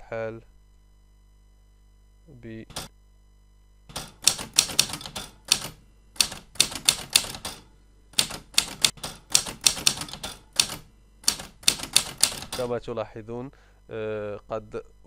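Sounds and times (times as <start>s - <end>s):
typewriter key strikes: 2.7s - 2.9s, 3.9s - 7.6s, 8.2s - 12.7s.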